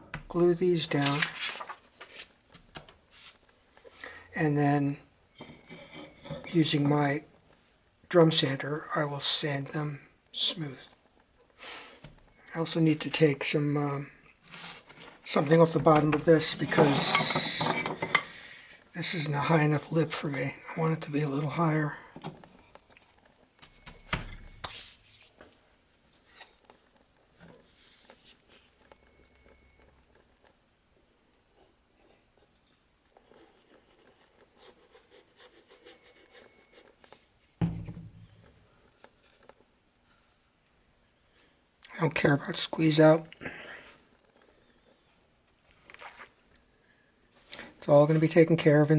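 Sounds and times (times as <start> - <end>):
rubbing or scraping: 14.4 - 18.4
sharp knock: 37.6 - 38.2.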